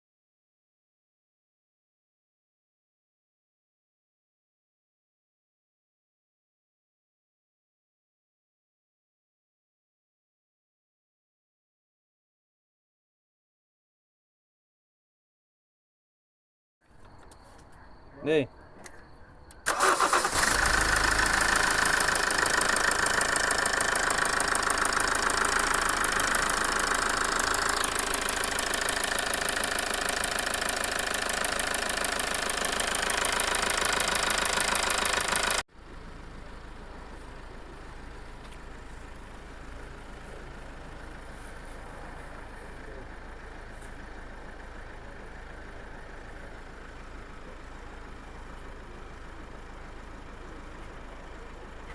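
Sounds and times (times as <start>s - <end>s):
diesel engine starting: 19.5s - 51.9s
diesel engine clattering at idle: 19.7s - 51.9s.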